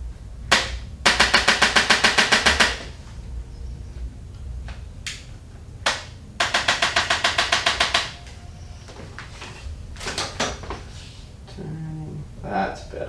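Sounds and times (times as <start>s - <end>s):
sharp joint clicks: 5.0s - 8.4s.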